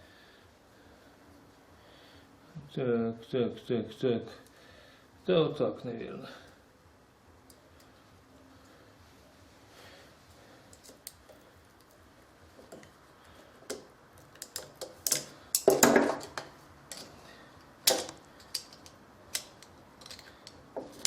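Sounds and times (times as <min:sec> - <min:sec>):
metal parts clicking and clinking: 0:13.7 - 0:17.2, 0:17.8 - 0:21.0.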